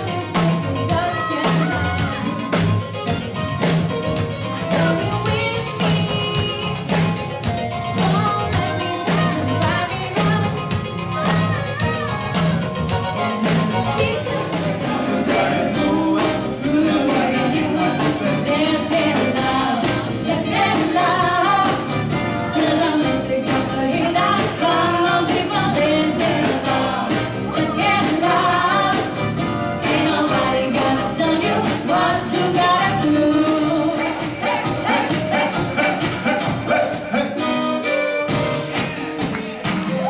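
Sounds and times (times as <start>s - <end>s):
person singing: 0.0s - 2.8s
live band playing: 0.0s - 40.0s.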